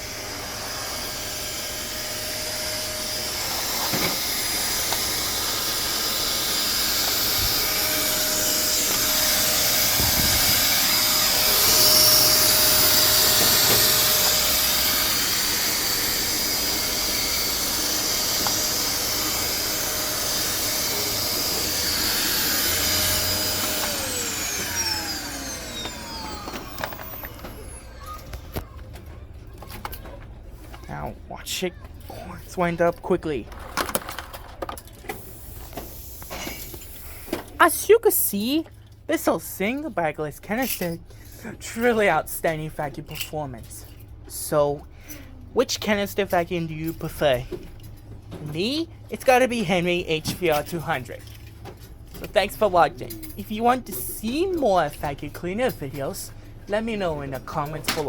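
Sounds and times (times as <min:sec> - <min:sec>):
vacuum cleaner motor whine: 0:00.0 - 0:28.7.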